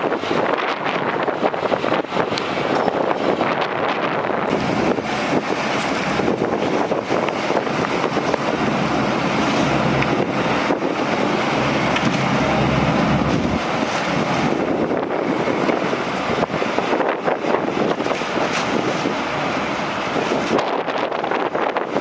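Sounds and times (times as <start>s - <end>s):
low engine hum: 0.0s - 22.0s
wind blowing across microphone: 0.0s - 22.0s.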